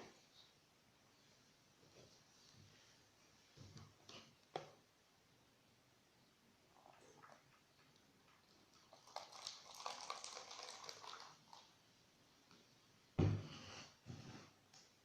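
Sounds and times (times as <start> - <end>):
water pouring from spout: 8.3 - 11.7.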